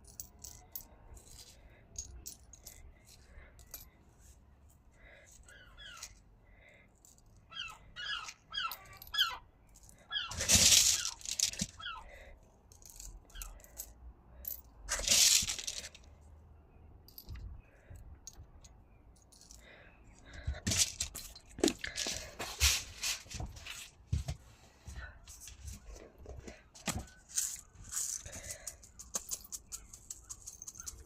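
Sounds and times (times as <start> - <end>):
glass pieces clinking: 8.7 - 11.8, 14.5 - 16.0, 27.3 - 31.0.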